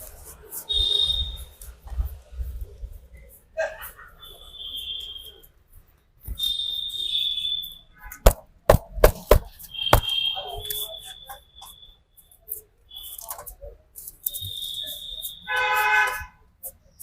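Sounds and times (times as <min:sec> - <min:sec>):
high whistle-like tone: 0:00.7 - 0:01.6, 0:04.2 - 0:05.5, 0:06.3 - 0:08.1, 0:09.6 - 0:13.3, 0:14.2 - 0:15.6
hands slapping a head: 0:08.2 - 0:10.1.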